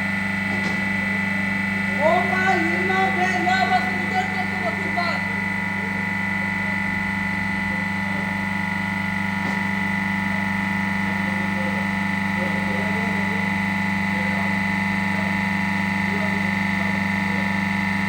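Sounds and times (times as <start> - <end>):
compressor humming with whine: 0.0 - 18.0.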